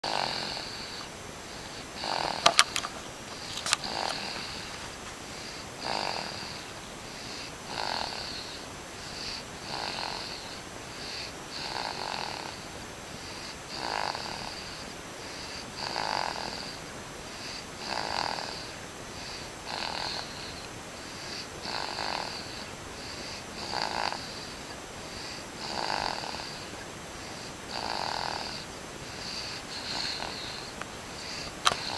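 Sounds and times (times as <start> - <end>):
snoring: 0.0 - 31.9
sharp clicks: 2.2 - 5.2, 31.5 - 31.9.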